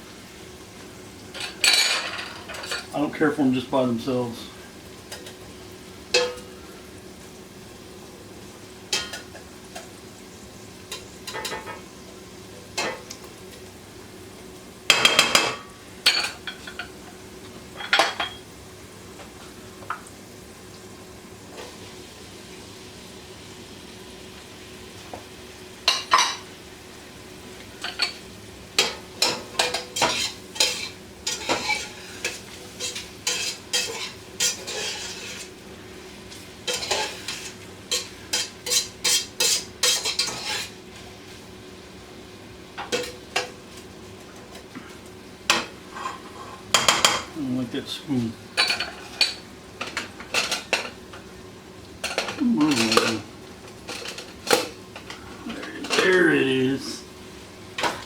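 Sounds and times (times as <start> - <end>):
metal spoon scraping cooking pot: 32.8 - 35.5.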